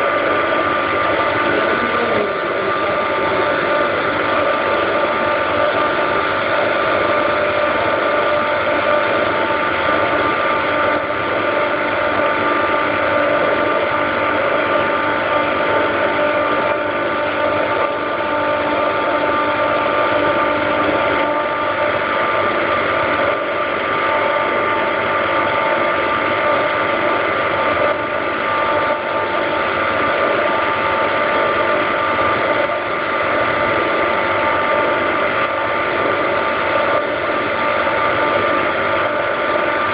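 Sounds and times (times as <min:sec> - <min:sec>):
constant whining tones: 0:00.0 - 0:29.1
chiller compressor drone: 0:00.0 - 0:39.9.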